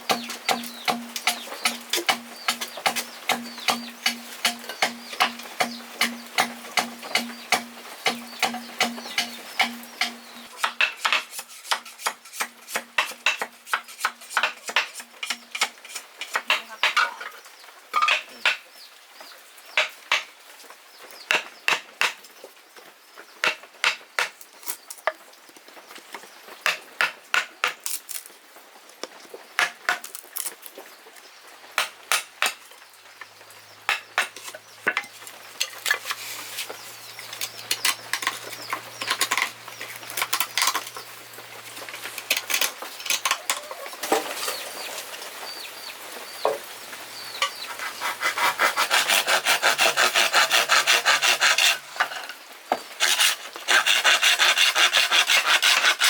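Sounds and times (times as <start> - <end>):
hard objects clicking and knocking: 0.1 - 11.3, 33.9 - 41.1, 41.8 - 44.3.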